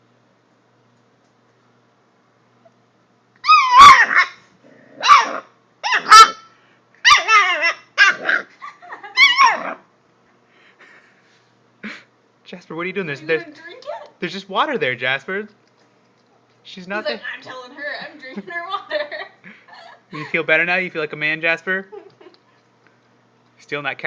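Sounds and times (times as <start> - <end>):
puppy barking and yipping: 3.4 - 4.4, 5.0 - 9.8.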